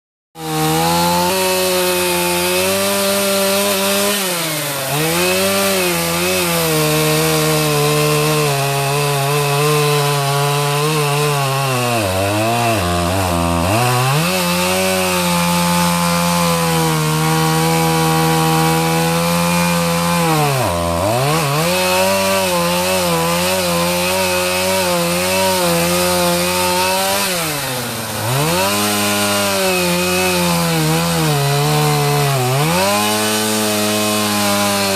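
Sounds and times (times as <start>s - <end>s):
chainsaw cutting a tree: 0.4s - 34.9s.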